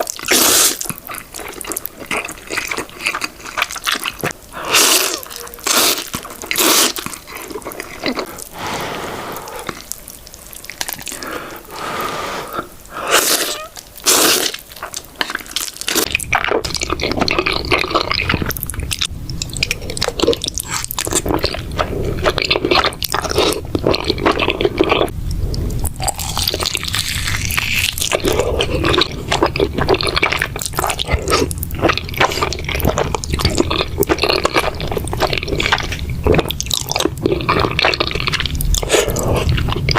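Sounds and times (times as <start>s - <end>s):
slurping and chewing noodles: 0.0s - 39.9s
steady low hum: 16.1s - 39.9s.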